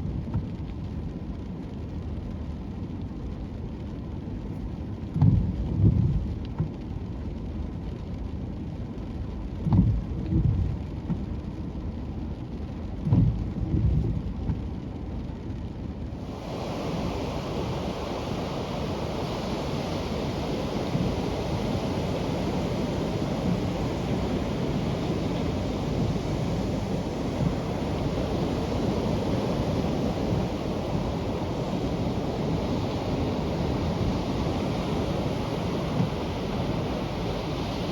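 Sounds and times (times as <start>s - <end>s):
ocean surf on a beach: 16.1s - 37.9s
wind gusting on microphone: 16.1s - 37.9s.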